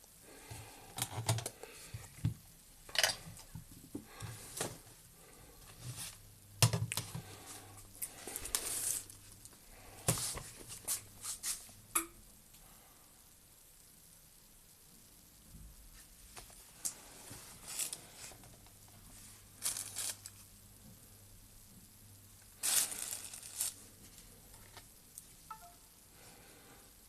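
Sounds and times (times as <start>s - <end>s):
small objects clicking and rustling: 19.6s - 20.4s, 22.6s - 23.8s.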